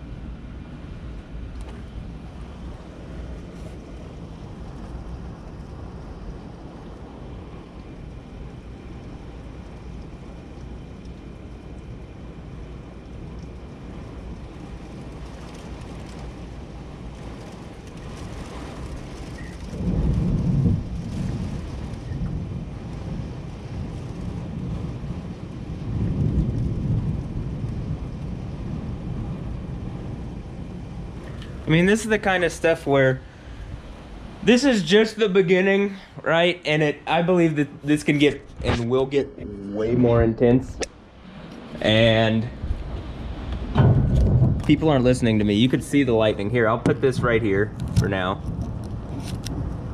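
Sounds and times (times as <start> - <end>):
rain: 0.0 - 39.2, 40.8 - 49.9
thunder rumbling: 0.0 - 49.9
wind: 0.0 - 49.9.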